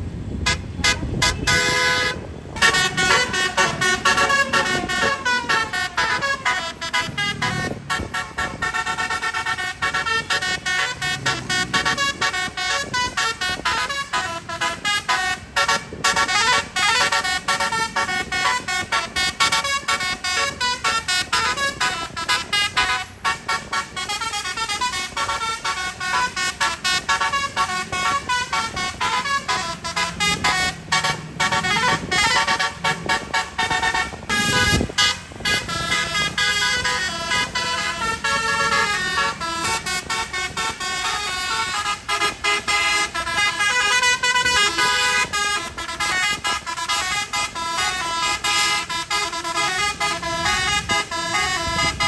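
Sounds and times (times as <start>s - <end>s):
musical bus air horn tune: 0.2s - 52.0s.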